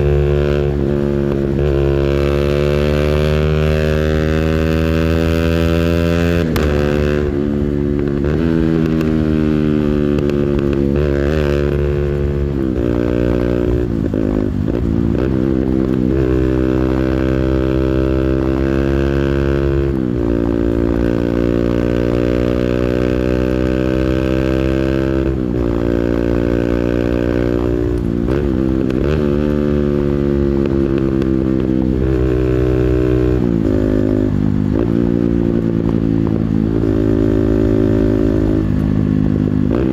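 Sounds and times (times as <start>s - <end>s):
engine revving high: 0.0s - 31.2s.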